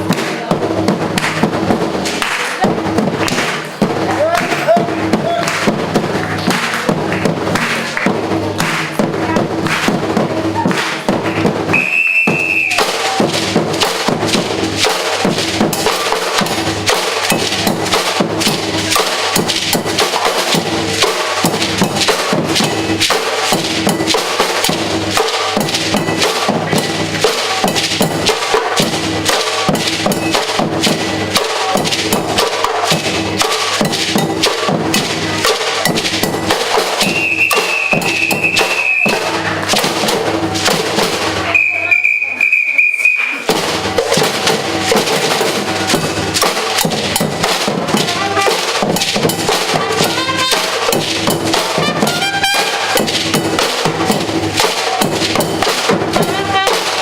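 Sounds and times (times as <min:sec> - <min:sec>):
percussion band drumming: 0:00.0 - 0:57.0
whistle blast: 0:11.7 - 0:12.8, 0:37.0 - 0:39.3, 0:41.5 - 0:43.4.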